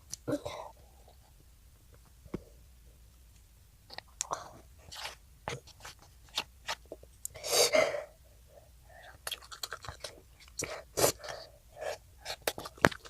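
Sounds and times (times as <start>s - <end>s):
child chewing food: 8.6s - 13.0s
wet mouth clicks: 9.2s - 10.6s.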